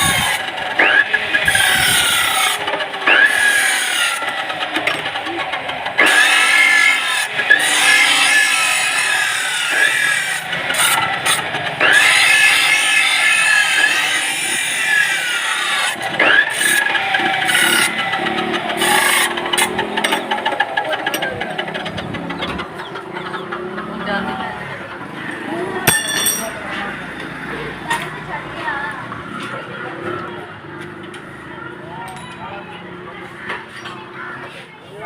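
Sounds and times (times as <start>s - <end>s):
power tool with shrill squeals: 0.0s - 21.3s.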